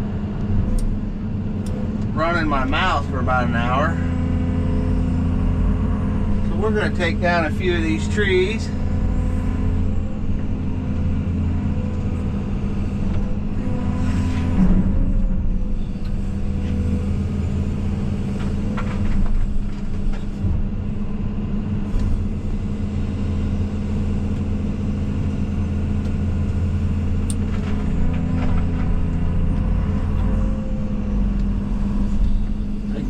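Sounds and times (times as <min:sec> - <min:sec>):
excavator diesel engine running: 0:00.0 - 0:33.0.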